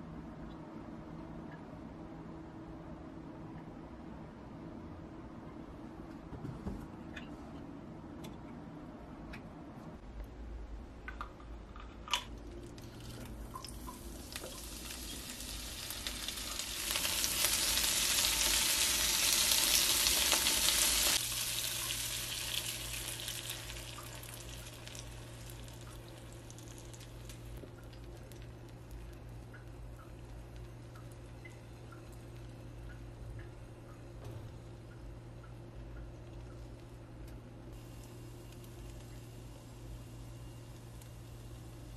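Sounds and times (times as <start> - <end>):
steady low hum: 0.0 - 41.9
food sizzling in pan: 13.6 - 27.6.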